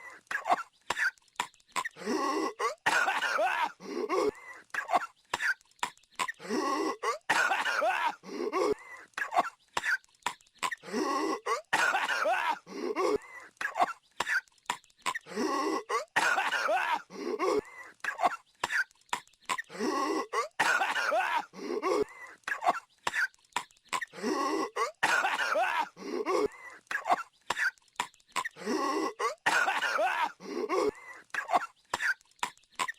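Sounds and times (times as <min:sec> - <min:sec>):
cartoon voice coughing: 0:11.4 - 0:14.4, 0:15.8 - 0:18.9, 0:20.3 - 0:23.3, 0:24.0 - 0:27.7, 0:28.4 - 0:32.2.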